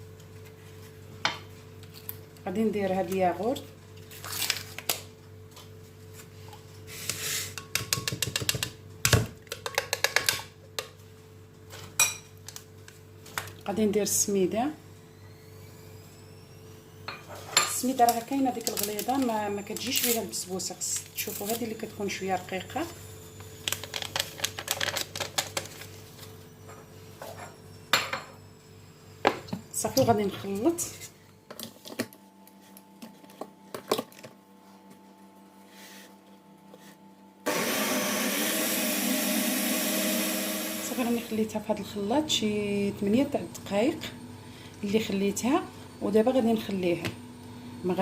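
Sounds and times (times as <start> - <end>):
kitchenware clicks and taps: 7.6 - 10.4.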